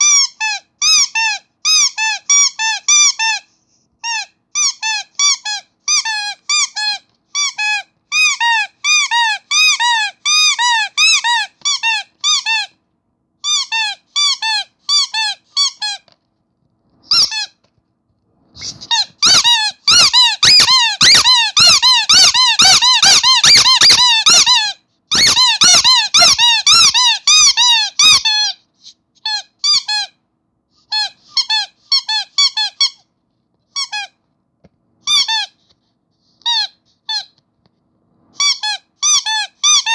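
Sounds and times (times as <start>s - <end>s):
rubber squeaky toy squeaking: 0.0s - 12.8s, 13.4s - 16.2s, 17.0s - 17.7s, 18.6s - 30.2s, 30.8s - 33.1s, 33.7s - 34.2s, 35.0s - 35.7s, 36.4s - 37.4s, 38.3s - 39.9s.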